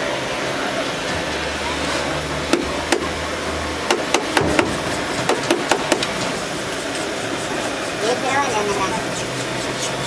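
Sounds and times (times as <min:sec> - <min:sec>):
steady background noise: 0:00.0 - 0:10.0
sharp ringing knocks: 0:03.9 - 0:06.1.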